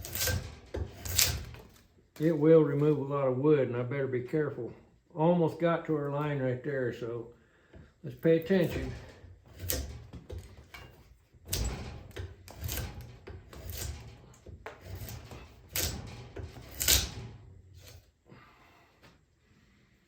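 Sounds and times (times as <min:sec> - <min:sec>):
draw knife scraping wood: 0:00.0 - 0:01.8, 0:08.5 - 0:18.1.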